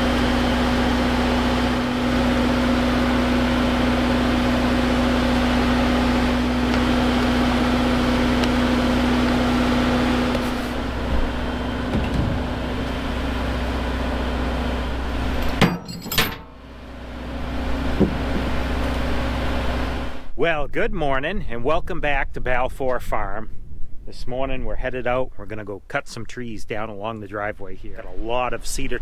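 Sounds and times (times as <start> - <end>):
engine humming: 0.0 - 20.4.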